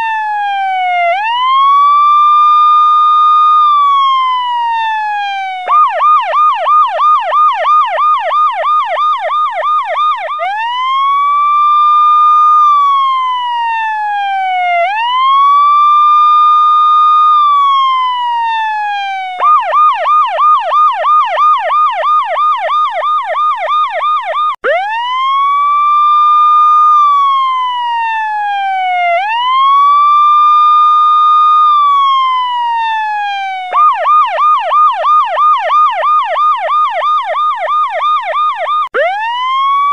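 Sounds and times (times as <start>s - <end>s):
electronic siren yelp and wail: 0.0s - 39.9s.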